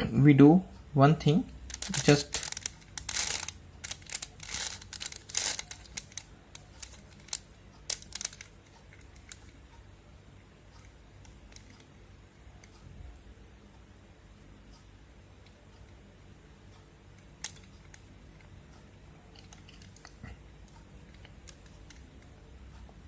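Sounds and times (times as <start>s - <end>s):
puzzle cube twisting clicks: 1.7s - 9.5s.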